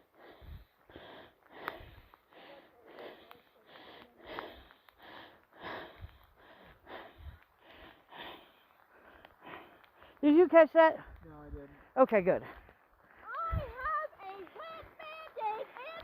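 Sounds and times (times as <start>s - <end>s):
person breathing hard: 0.0s - 10.2s.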